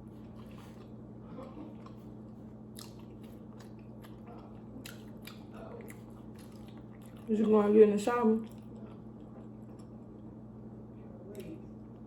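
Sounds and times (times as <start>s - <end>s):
chewing and biting food: 0.0s - 7.6s, 8.4s - 10.3s
steady low hum: 0.0s - 12.0s.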